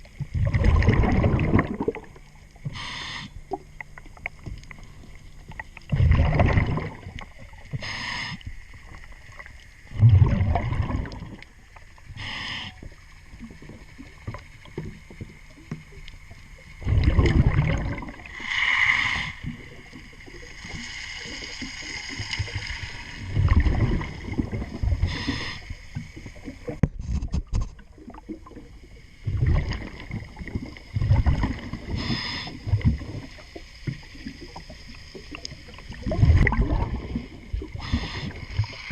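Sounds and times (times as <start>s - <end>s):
rumbling gush of bubbles: 0.0s - 2.8s, 5.4s - 7.8s, 8.8s - 11.7s, 16.7s - 38.9s.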